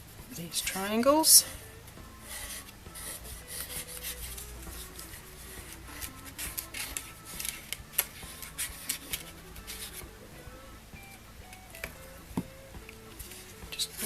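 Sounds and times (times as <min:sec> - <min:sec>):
adhesive rubbing on paper card: 0:02.2 - 0:10.1.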